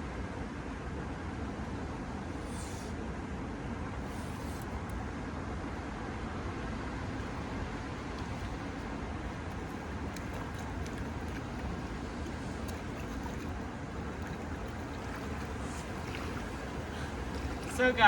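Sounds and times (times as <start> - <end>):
stream water rushing: 6.9 - 18.0.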